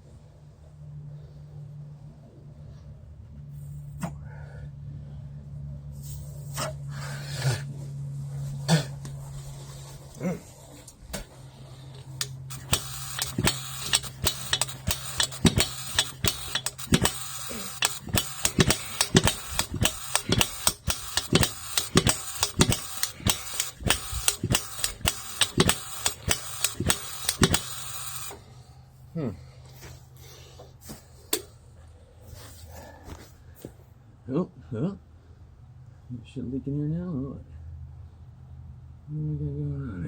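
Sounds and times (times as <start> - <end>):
gasoline jackhammer firing pops: 12.1 - 28.4.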